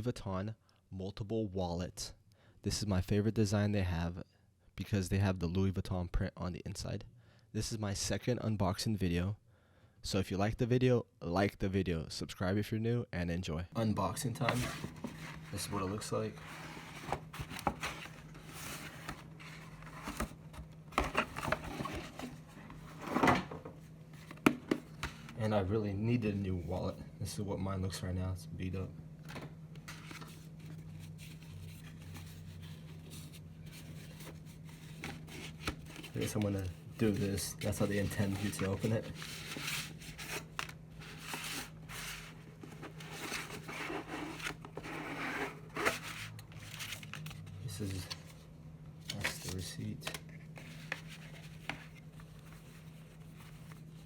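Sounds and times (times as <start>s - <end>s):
packaging rustling and scraping: 14.2s - 25.4s, 29.8s - 48.4s, 49.1s - 54.0s.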